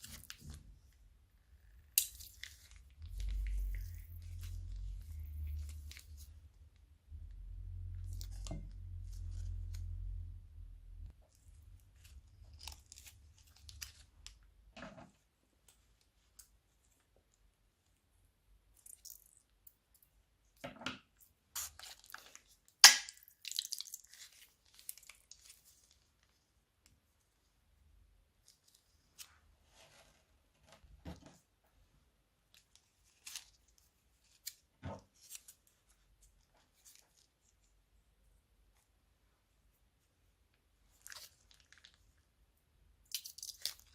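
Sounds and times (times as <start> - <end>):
crunchy slime clicks and crackles: 43.0 - 43.9.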